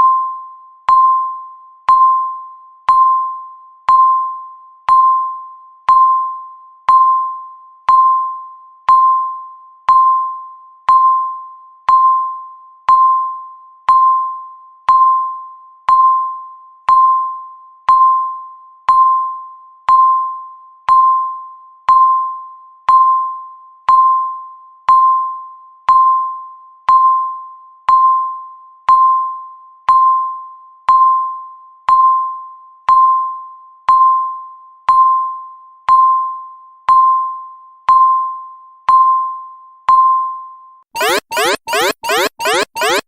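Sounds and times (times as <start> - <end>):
timer beeping: 41.0 - 43.0.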